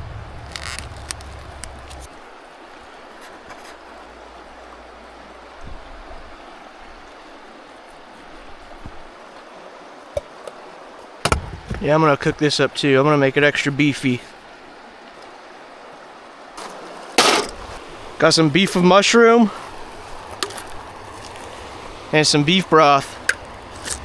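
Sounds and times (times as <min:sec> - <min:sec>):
low rumble: 0:00.0 - 0:02.1
steady rushing hiss: 0:15.9 - 0:24.0.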